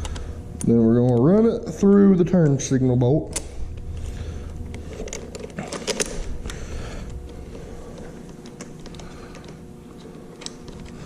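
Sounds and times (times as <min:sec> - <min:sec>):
faint steady hum: 0:00.0 - 0:11.0
small metal parts clicking and rattling: 0:04.9 - 0:06.3.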